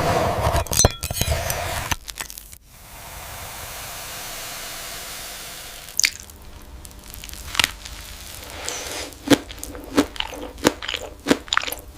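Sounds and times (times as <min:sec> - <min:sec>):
glassy cracks and crunches: 0:01.8 - 0:02.6, 0:05.9 - 0:11.9.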